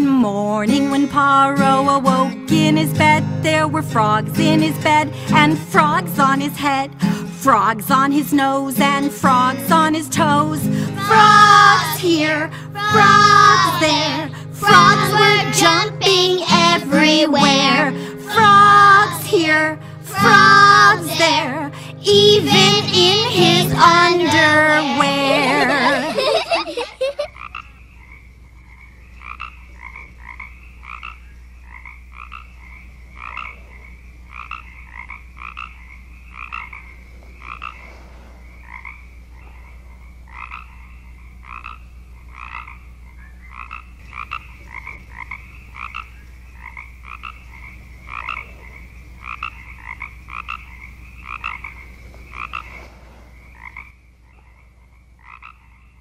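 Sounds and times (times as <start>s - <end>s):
children's song: 0.0s - 27.2s
frogs croaking: 9.2s - 56.0s.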